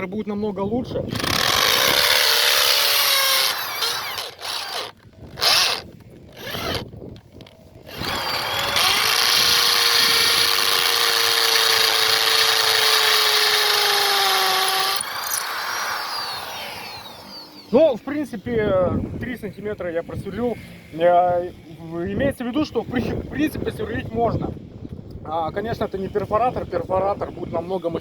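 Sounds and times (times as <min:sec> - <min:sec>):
hammer drill drilling into concrete: 0:01.1 - 0:17.0.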